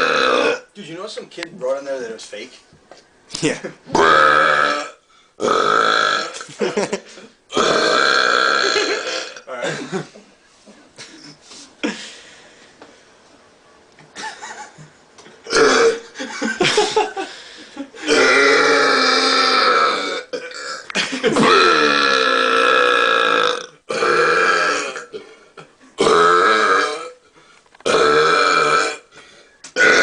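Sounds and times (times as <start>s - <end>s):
man belching: 0.0s - 0.7s, 3.9s - 6.5s, 7.5s - 9.8s, 15.4s - 16.2s, 18.0s - 25.3s, 26.0s - 27.2s, 27.8s - 29.1s, 29.8s - 30.0s.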